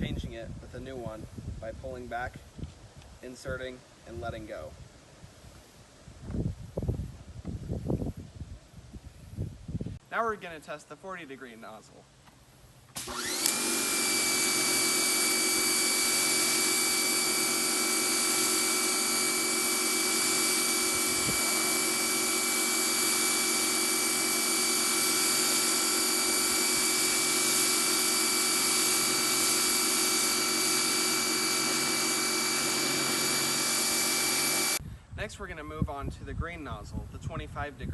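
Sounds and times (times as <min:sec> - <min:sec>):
pressure washer motor whine: 0:12.9 - 0:34.8.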